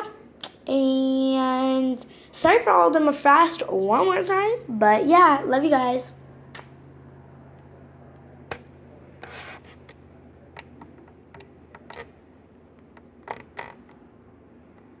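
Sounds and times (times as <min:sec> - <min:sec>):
faint low hum: 0:00.0 - 0:15.0
hands rustling: 0:09.2 - 0:10.0.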